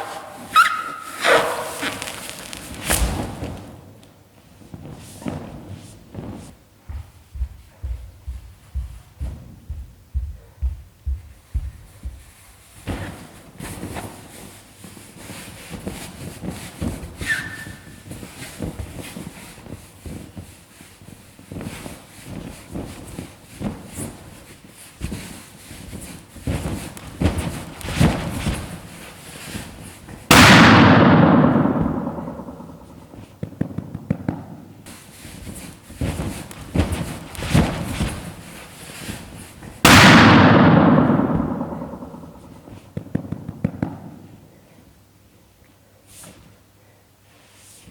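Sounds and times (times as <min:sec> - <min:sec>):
balloon bursting with loud bang: 0:00.0 - 0:03.8, 0:30.3 - 0:33.0, 0:39.8 - 0:42.6
balloons rubbing and squeaking: 0:00.0 - 0:03.8, 0:12.6 - 0:30.1, 0:34.9 - 0:39.6.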